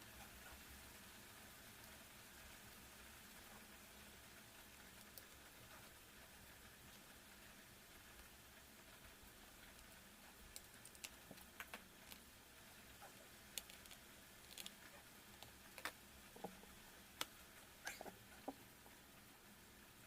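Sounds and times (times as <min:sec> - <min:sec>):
faint steady hiss: 0:00.0 - 0:20.0
small parts clicking and tapping: 0:09.6 - 0:12.3, 0:13.0 - 0:17.4.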